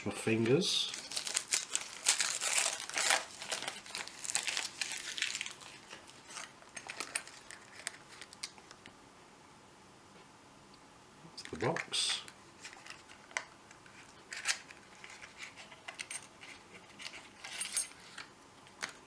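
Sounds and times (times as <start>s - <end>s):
wrapping paper tearing and crinkling: 0.0s - 8.7s.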